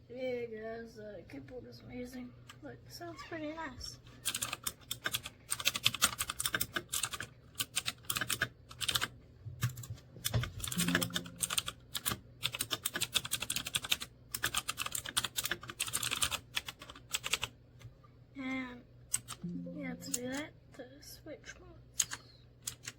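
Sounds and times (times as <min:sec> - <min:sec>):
mechanical keyboard typing: 0:04.2 - 0:17.5, 0:19.1 - 0:20.4, 0:22.0 - 0:22.9.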